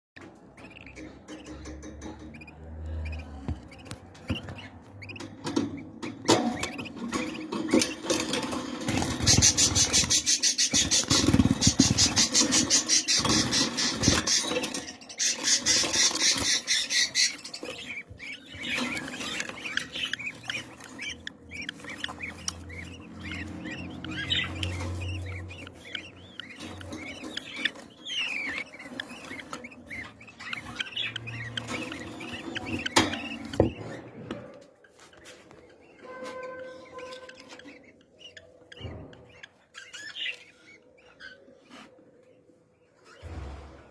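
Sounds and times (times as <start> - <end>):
budgerigar chattering and chirping: 0.3 - 34.0.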